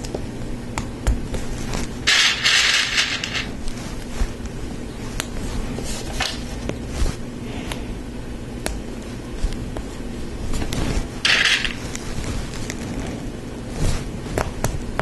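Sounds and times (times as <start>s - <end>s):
plastic pieces clicking: 2.1s - 3.5s.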